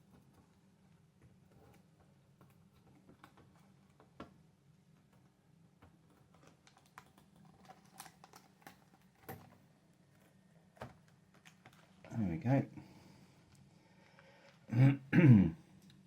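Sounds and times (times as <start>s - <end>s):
fingers clicking and tapping laptop: 1.5s - 9.6s.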